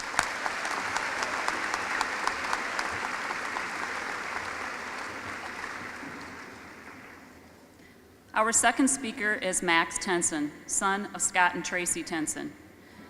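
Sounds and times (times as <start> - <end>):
audience applauding: 0.0 - 7.4.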